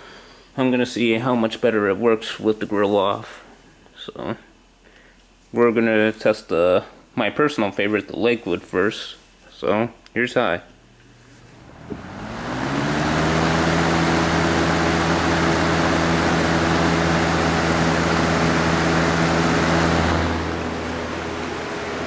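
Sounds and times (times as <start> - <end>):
fan motor hum: 10.8 - 22.0
loud rush of air: 11.6 - 22.0.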